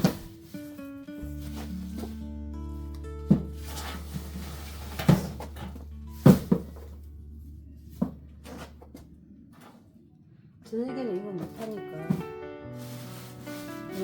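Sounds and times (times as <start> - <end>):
objects knocking: 0.0 - 0.6, 3.3 - 7.0, 11.4 - 14.0
background music: 0.0 - 9.0, 10.7 - 14.0
low steady hum: 1.1 - 14.0.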